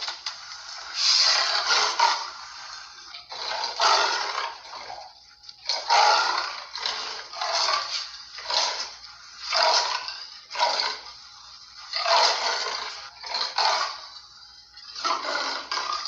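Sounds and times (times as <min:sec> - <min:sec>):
harsh raspy snarls: 0:00.8 - 0:11.1, 0:11.9 - 0:14.1, 0:15.0 - 0:16.0.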